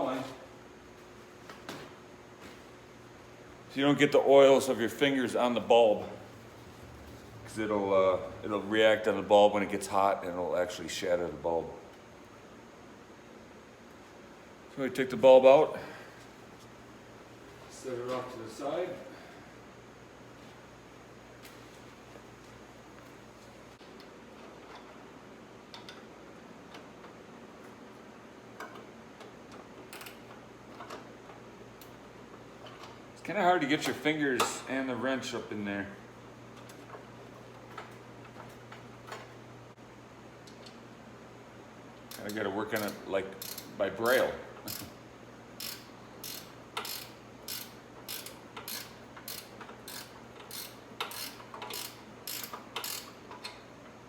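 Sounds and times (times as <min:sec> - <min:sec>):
wrench clicking on a bolt: 0:42.1 - 0:43.7, 0:44.6 - 0:45.0, 0:45.6 - 0:53.6.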